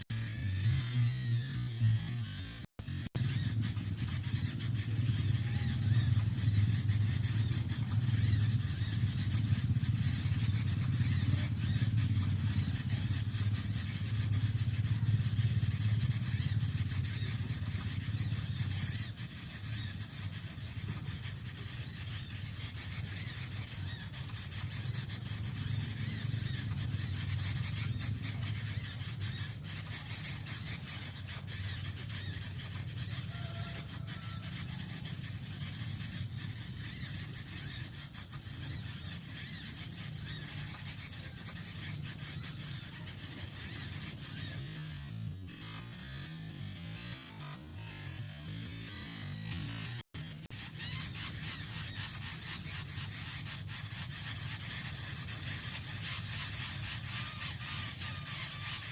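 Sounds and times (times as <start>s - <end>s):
small birds chirping: 0.0s - 58.9s
steady low rumble: 1.9s - 46.2s.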